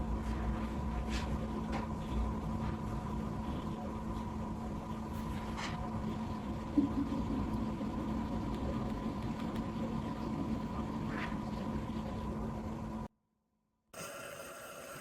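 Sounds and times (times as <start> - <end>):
mechanical hum with whine: 0.0 - 13.1, 14.0 - 15.0.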